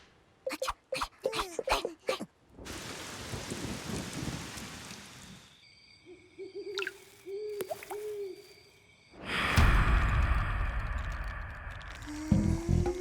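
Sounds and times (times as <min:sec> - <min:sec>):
rain-like rushing noise: 0:02.5 - 0:05.6.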